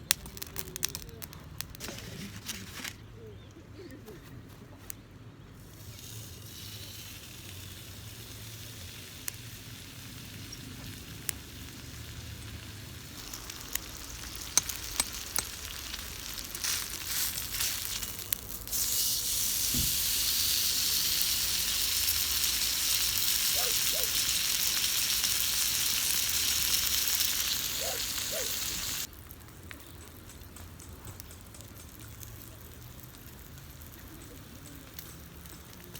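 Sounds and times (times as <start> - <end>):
sharp pops and crackles: 0.0 - 3.0, 10.4 - 35.9
food sizzling in a hot pan: 6.2 - 29.1.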